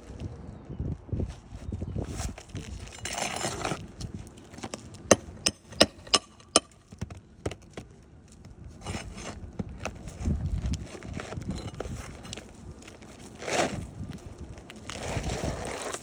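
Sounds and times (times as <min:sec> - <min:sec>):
tool scraping roof shingles: 0:02.3 - 0:03.9, 0:04.5 - 0:07.9, 0:08.7 - 0:12.5
sharp tool taps: 0:05.1 - 0:07.6.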